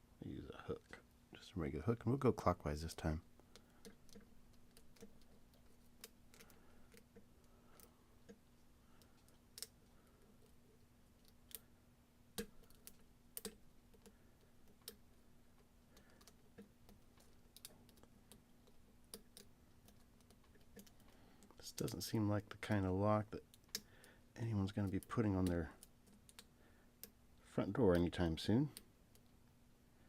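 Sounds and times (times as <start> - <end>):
faint steady hum: 0.0 - 30.0.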